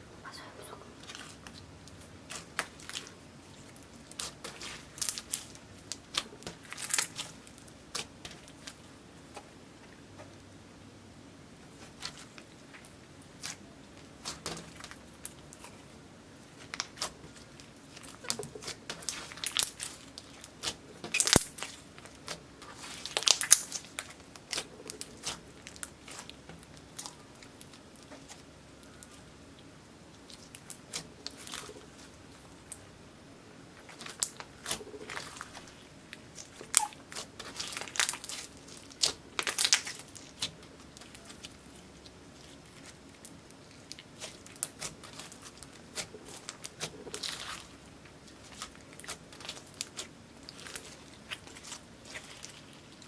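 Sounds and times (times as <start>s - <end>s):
slime crackling and popping: 1.1s - 8.8s, 16.5s - 29.2s, 33.8s - 53.0s.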